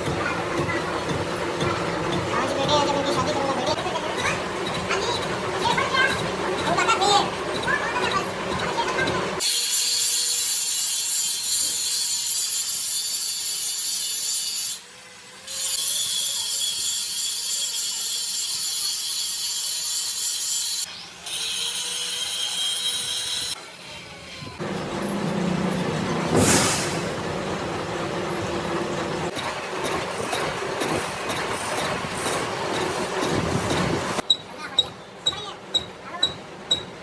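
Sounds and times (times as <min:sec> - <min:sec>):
high hissing metal cutting: 0:00.0 - 0:34.2
low machine noise: 0:24.2 - 0:37.0.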